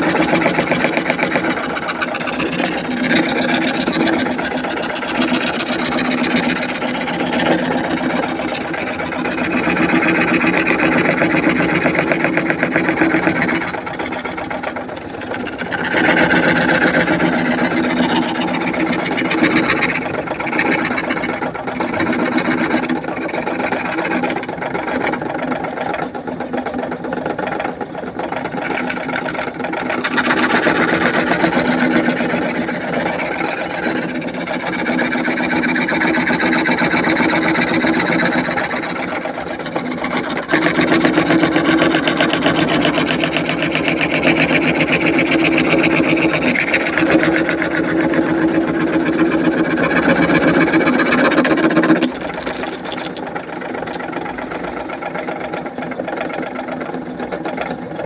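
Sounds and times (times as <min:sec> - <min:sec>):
power saw cutting wood: 0:00.0 - 0:58.0.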